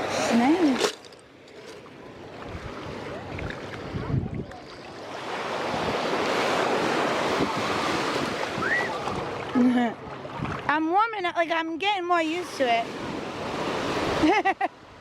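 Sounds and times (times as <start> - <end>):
ocean surf rushing: 2.2 - 10.7
wind buffeting microphone: 2.4 - 5.0, 6.8 - 9.5, 10.2 - 10.7.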